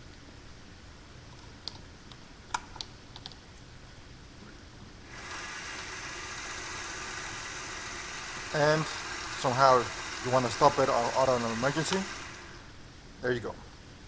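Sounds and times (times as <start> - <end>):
lathe motor running: 5.1 - 12.8.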